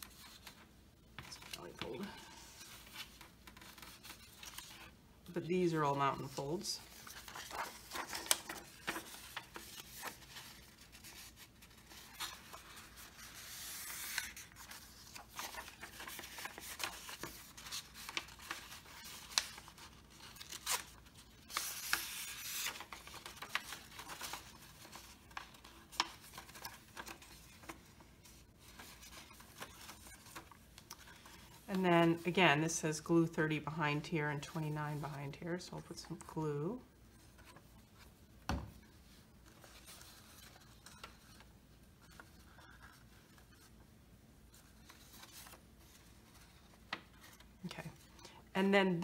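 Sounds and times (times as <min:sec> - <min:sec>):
paper rustling and scraping: 0:00.0 - 0:04.9, 0:05.9 - 0:32.2, 0:38.8 - 0:43.8
paper sliding: 0:06.9 - 0:19.4.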